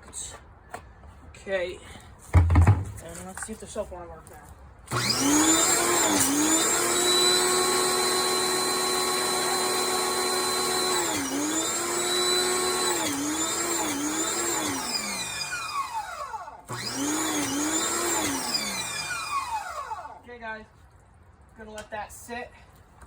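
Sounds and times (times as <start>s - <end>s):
power washer motor whining: 4.9s - 20.2s.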